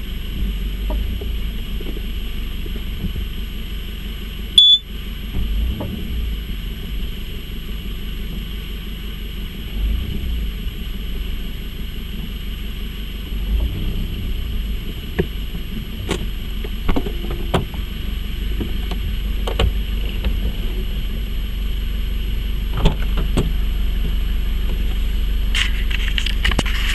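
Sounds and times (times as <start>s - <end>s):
car engine low rumble: 0.0s - 26.9s
steady hum: 6.3s - 26.9s
sharp clicks and knocks: 16.0s - 17.9s, 18.6s - 20.5s, 22.8s - 24.8s.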